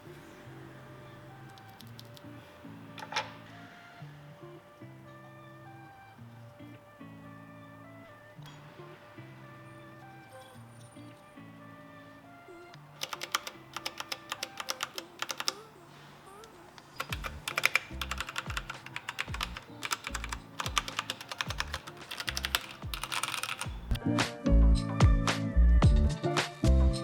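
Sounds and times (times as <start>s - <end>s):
background music: 0.0s - 27.0s
mechanical keyboard typing: 1.5s - 2.3s, 13.0s - 15.7s, 17.0s - 24.0s.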